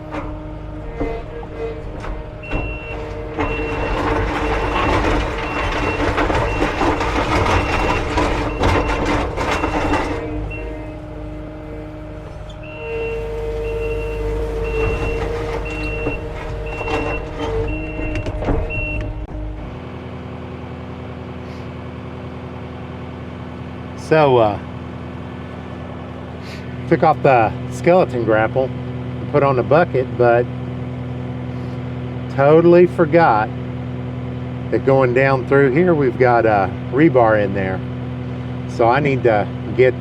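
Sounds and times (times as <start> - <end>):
skid steer engine running: 0.0 - 40.0
reversing alarm beeping: 2.3 - 11.0, 12.5 - 19.3.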